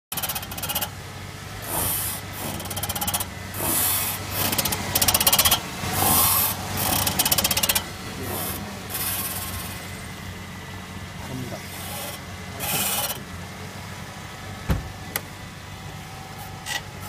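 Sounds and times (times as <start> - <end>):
fast ratchety creaking: 0.1 - 0.9, 1.8 - 9.7.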